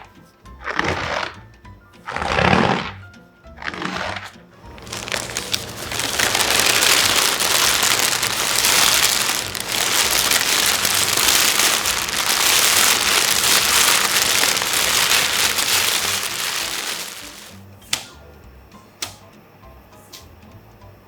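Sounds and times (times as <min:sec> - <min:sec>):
dense crackling patter: 0:04.6 - 0:17.6.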